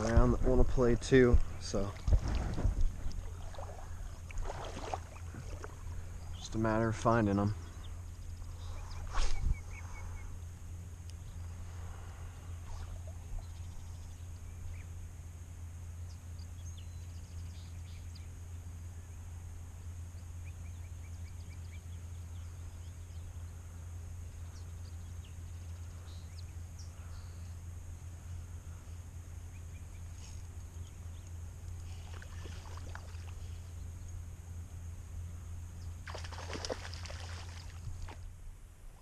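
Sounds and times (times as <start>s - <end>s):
flowing river water: 1.6s - 6.5s, 32.0s - 33.5s, 36.0s - 38.2s
bird chirps and trills: 6.0s - 10.5s, 12.3s - 15.0s.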